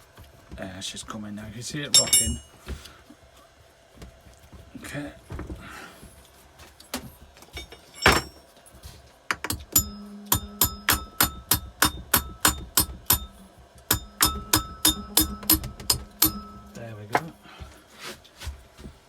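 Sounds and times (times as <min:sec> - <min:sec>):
hammer blows ringing on metal: 0:09.4 - 0:16.8.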